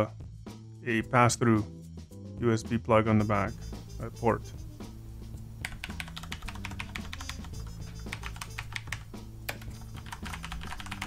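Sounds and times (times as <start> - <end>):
typing on mechanical keyboard: 5.7 - 11.0.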